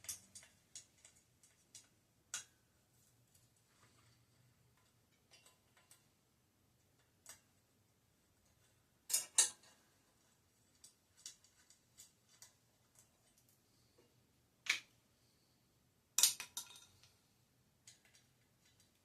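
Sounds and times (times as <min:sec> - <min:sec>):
small metal parts clinking: 0:00.0 - 0:01.9, 0:09.1 - 0:09.8, 0:16.2 - 0:17.1.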